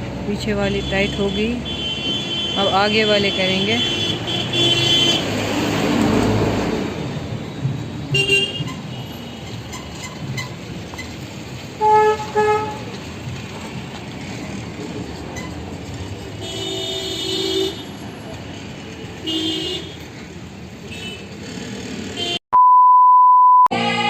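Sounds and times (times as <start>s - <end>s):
traffic hum: 0.0s - 22.4s
vehicle horns honking: 0.8s - 5.4s, 8.1s - 9.6s, 11.8s - 12.9s, 16.4s - 17.9s, 19.2s - 20.0s, 22.2s - 22.4s.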